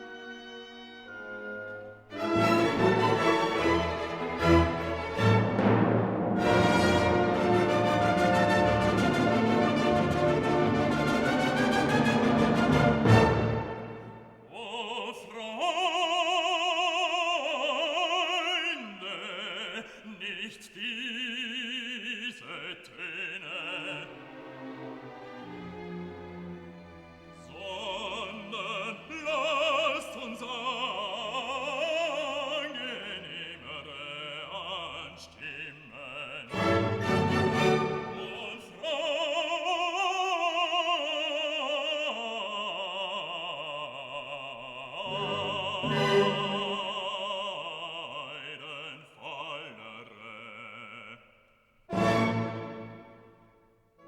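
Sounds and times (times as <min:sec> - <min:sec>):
orchestral accompaniment: 0:00.0 - 0:14.5, 0:23.8 - 0:30.1, 0:36.5 - 0:38.8, 0:45.0 - 0:47.5, 0:51.9 - 0:53.6
operatic singing voice: 0:02.1 - 0:05.8, 0:06.4 - 0:25.2, 0:27.4 - 0:53.4.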